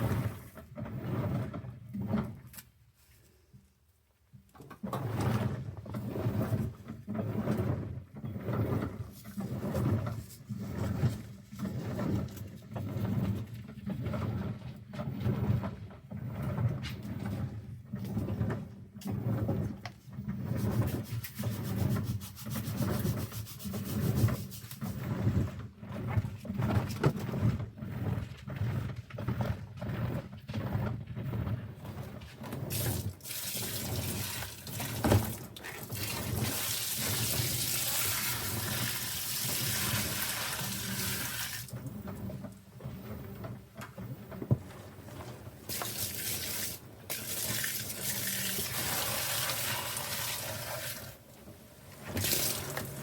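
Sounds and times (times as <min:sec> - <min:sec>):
wet sponge squeezed and rubbed: 0:20.4 - 0:25.5, 0:32.6 - 0:41.7, 0:45.7 - 0:51.3, 0:52.0 - 0:53.0.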